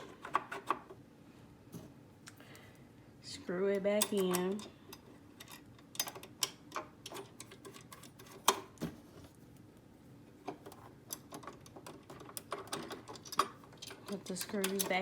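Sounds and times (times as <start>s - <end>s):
screwdriver clicking on metal: 3.9s - 8.6s, 11.1s - 15.0s.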